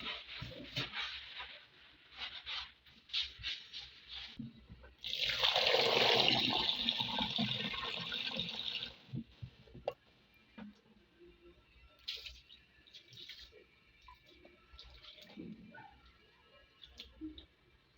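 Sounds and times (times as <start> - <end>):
tap water running into sink: 5.1 - 9.2.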